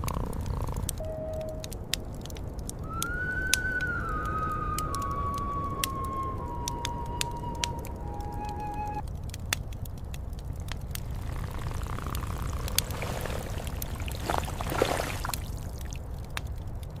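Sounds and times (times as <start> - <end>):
fire crackling: 0.0 - 17.0
low storm rumble: 0.0 - 17.0
rushing pouring sound: 11.0 - 16.1.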